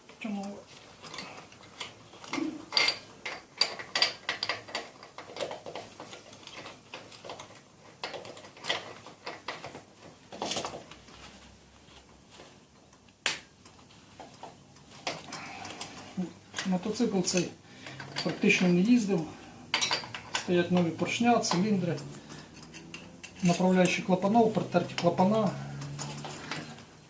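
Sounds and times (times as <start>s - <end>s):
metal tools clinking and knocking: 1.0s - 9.8s, 15.0s - 26.8s.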